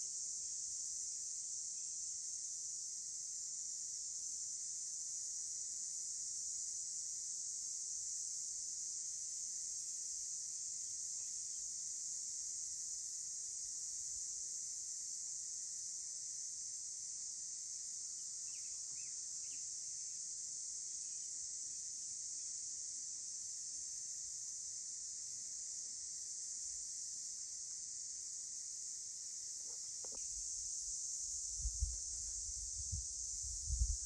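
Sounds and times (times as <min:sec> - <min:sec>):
insects chorus: 0:00.0 - 0:34.0
short insect chirps: 0:17.8 - 0:20.3, 0:25.8 - 0:34.0.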